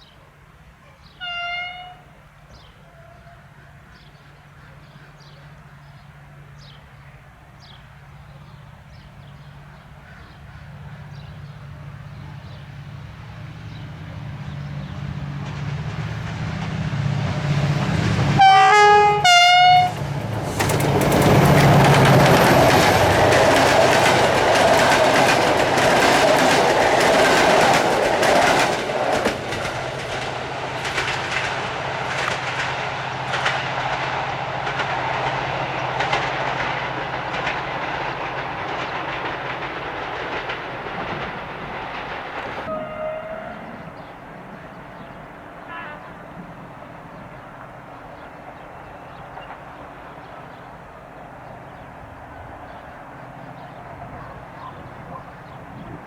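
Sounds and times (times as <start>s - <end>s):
multi-tone train horn blasts: 1.2s - 2.2s, 18.2s - 20.1s, 42.7s - 44.4s, 45.6s - 46.4s
locomotive engine rumble: 4.4s - 56.0s
wheels clattering over rail joints: 19.4s - 43.2s.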